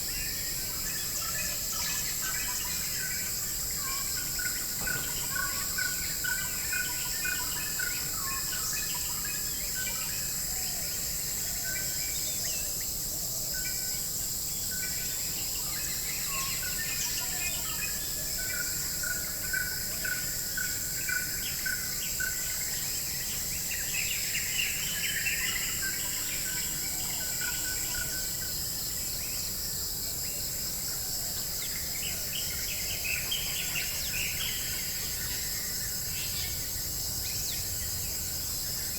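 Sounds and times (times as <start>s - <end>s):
insect chorus: 0.0s - 38.9s.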